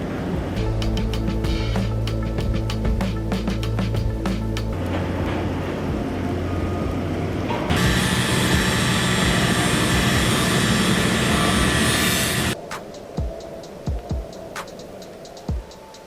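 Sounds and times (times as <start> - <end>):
engine running: 0.0 - 12.6.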